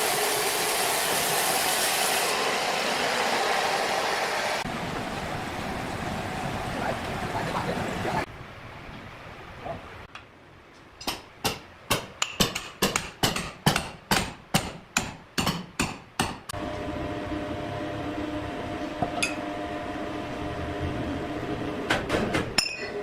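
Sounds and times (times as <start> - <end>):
machine humming: 16.6 - 21.9.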